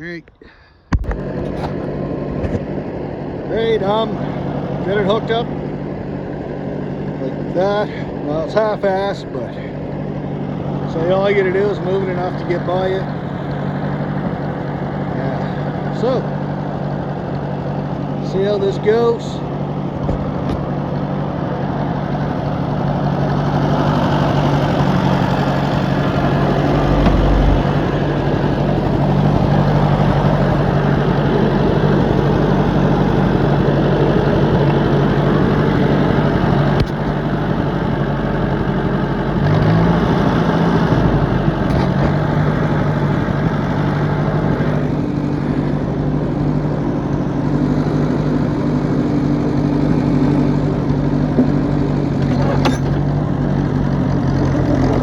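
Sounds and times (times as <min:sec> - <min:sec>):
tractor engine running under load: 0:00.0 - 0:55.0.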